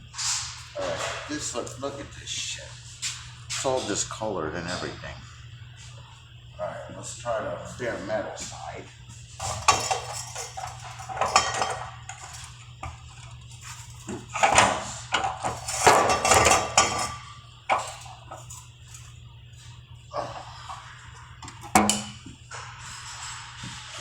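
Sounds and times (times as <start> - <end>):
steady low hum: 0.0 - 24.0
welding crackling spurts: 8.3 - 21.7.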